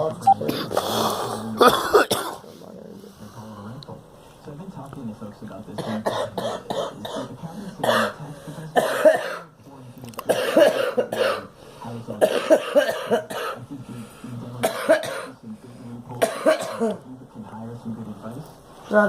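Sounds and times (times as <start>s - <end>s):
girl coughing: 1.6s - 2.4s, 8.8s - 9.4s, 10.3s - 11.4s, 12.2s - 13.6s, 14.6s - 15.3s, 16.2s - 17.0s.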